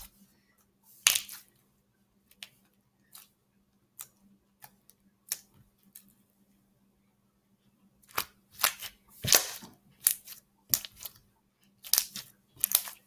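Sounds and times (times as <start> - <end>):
slime with beads squished by hand: 8.6 - 11.1.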